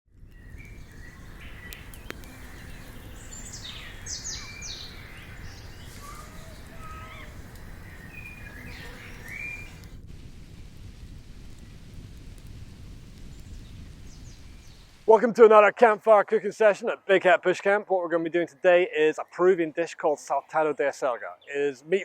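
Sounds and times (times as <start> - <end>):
wild birds calling and singing: 0.3 - 9.9, 18.7 - 22.0.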